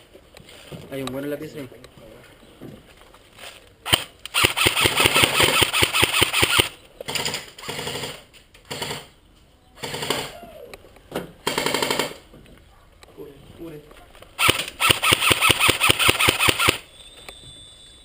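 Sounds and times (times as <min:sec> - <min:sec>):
airsoft gun firing bursts: 0:03.9 - 0:09.1, 0:11.4 - 0:12.2, 0:14.4 - 0:16.8.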